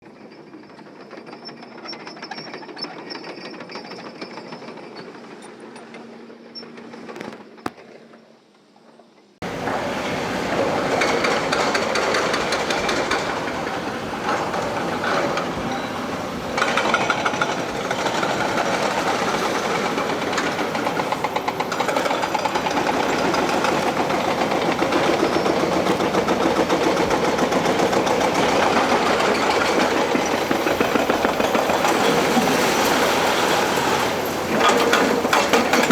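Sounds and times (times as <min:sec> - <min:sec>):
excavator engine humming: 0:09.4 - 0:35.9
loud mechanical rattle and clatter: 0:09.5 - 0:35.9.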